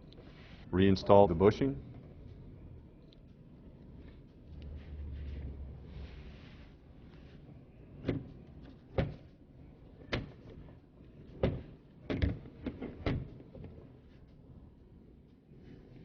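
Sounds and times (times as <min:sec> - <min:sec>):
sharp clicks and knocks of parts: 0:11.3 - 0:13.8.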